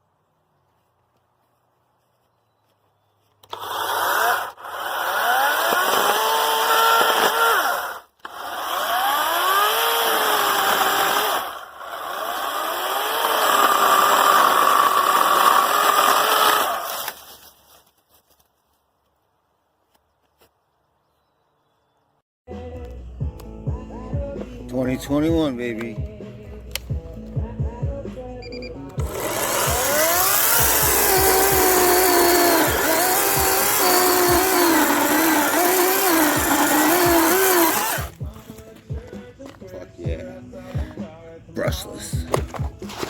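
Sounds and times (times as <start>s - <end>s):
cordless chainsaw cutting wood: 3.4s - 17.2s, 29.0s - 38.3s.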